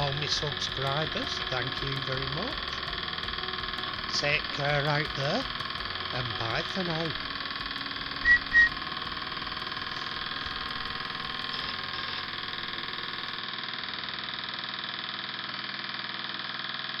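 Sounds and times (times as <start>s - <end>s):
model steam engine running: 0.0s - 13.4s.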